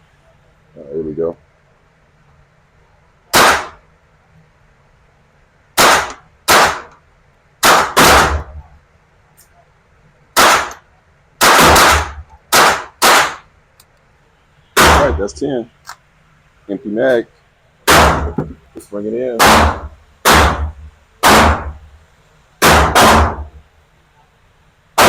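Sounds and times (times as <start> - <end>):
rifle shots with echo: 3.3 - 3.8, 5.8 - 6.9, 7.6 - 8.6, 10.4 - 10.8, 11.4 - 13.5, 14.8 - 15.3, 17.9 - 18.6, 19.4 - 21.8, 22.6 - 23.6.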